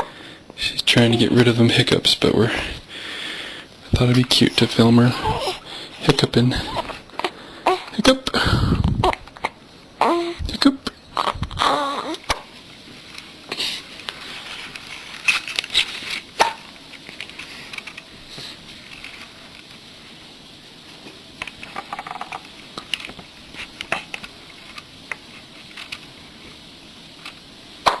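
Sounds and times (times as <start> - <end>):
baby hiccupping: 5.2 - 5.6, 6.6 - 8.0, 8.9 - 12.5
small clicks and rustles: 14.0 - 18.1, 18.7 - 19.9, 20.9 - 26.6.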